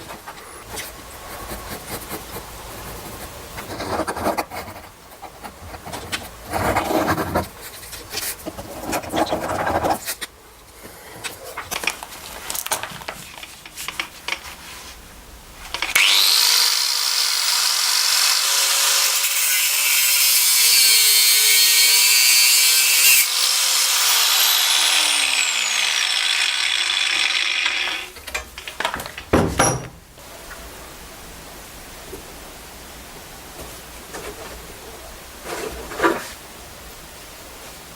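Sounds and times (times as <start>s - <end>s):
hand rubbing and scraping: 0.0s - 10.3s
small electric power tool whining: 15.8s - 19.7s, 20.3s - 28.2s
knocks: 28.6s - 30.1s.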